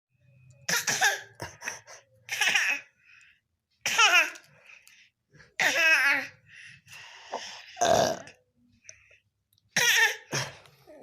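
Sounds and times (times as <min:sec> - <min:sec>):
baby coughing: 0:00.7 - 0:02.9, 0:03.8 - 0:04.4, 0:05.6 - 0:06.3, 0:09.8 - 0:10.6.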